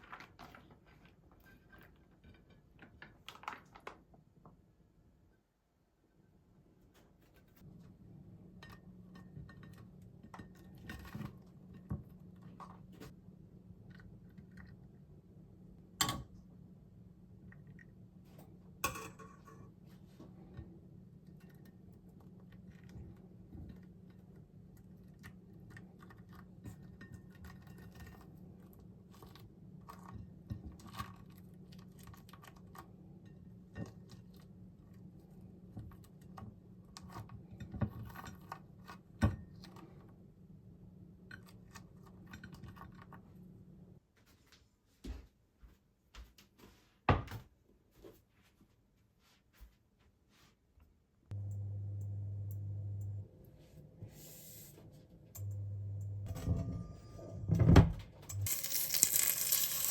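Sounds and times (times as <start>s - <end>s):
low hum: 51.3s - 59.9s
utensils and dishes clicking: 58.3s - 59.9s.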